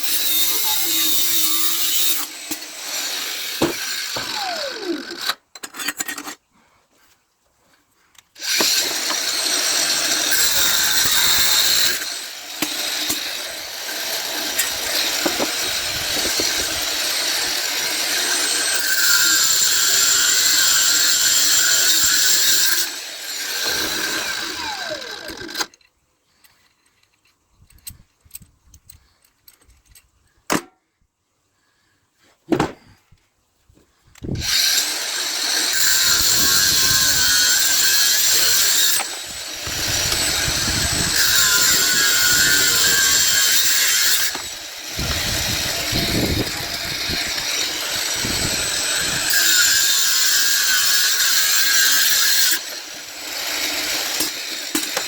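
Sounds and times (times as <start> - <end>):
power tool cutting brass: 0.0 - 5.4, 8.4 - 25.7, 34.4 - 55.0.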